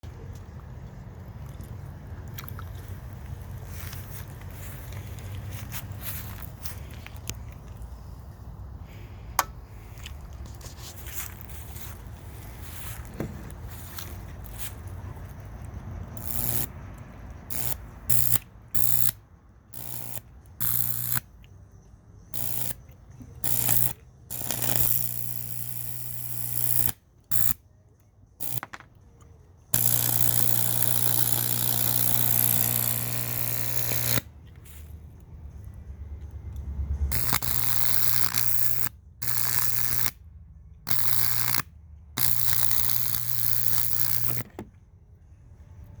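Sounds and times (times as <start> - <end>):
electrical arc buzzing and crackling: 16.1 - 16.8, 17.4 - 19.2, 19.8 - 21.2, 22.4 - 22.8, 23.4 - 27.6, 28.4 - 28.8, 29.8 - 34.3, 37.1 - 40.2, 40.9 - 44.4.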